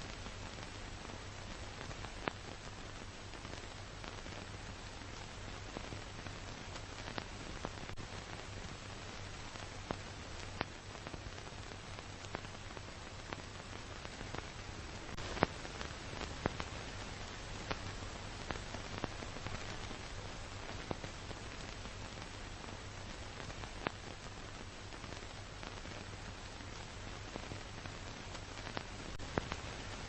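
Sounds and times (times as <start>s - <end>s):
faint low hum: 0.0s - 30.0s
steady hiss: 0.0s - 30.0s.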